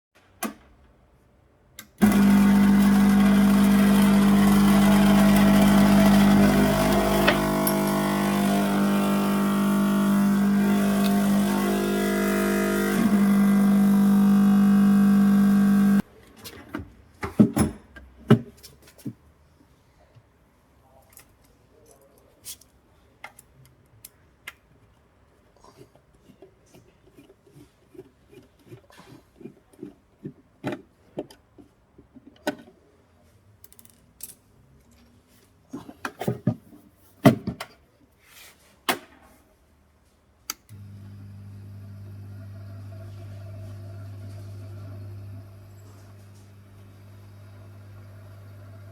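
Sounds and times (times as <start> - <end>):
air pump buzzing hum: 2.0 - 16.0, 40.7 - 48.9.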